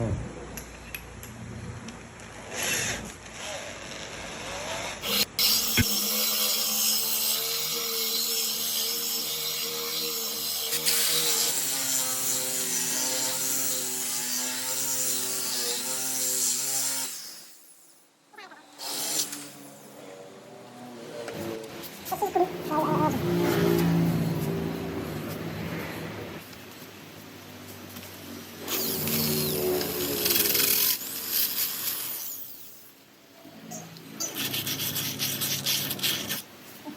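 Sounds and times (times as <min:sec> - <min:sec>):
core drill grinding into glass: 0:04.7 - 0:17.9, 0:28.6 - 0:33.0
glass drilling machine grinding: 0:28.7 - 0:32.9.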